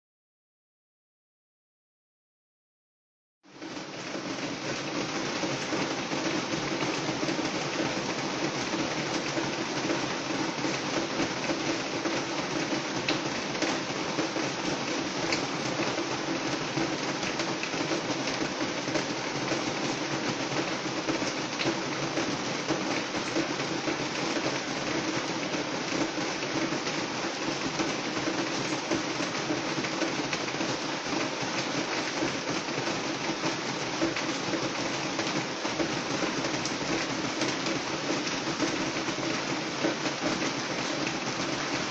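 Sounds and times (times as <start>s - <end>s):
rain on a roof: 3.4s - 41.9s.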